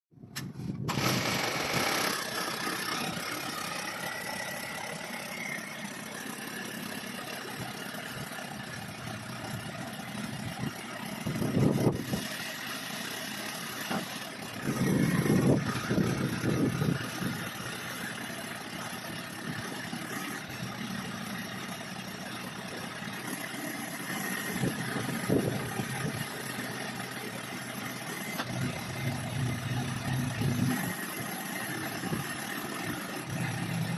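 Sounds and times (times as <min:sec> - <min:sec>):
drilling rig engine running: 0:00.3 - 0:33.9.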